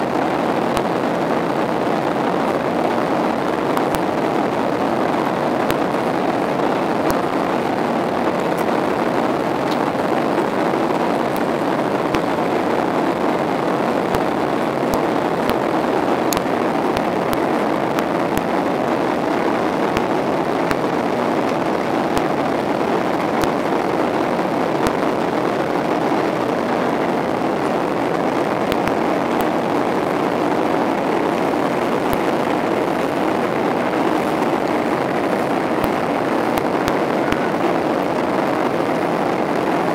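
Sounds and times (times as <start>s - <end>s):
airplane cabin jet engine rush: 0.0s - 39.9s.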